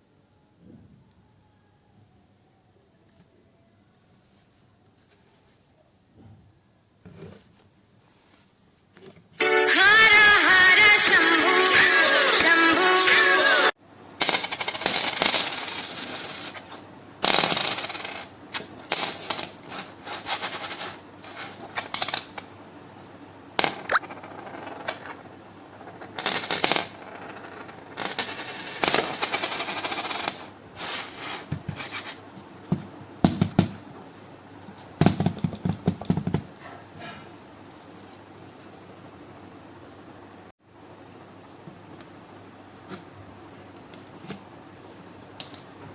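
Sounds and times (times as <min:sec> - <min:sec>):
coins clinking into piggy bank: 0:14.2 - 0:22.4, 0:26.0 - 0:30.5.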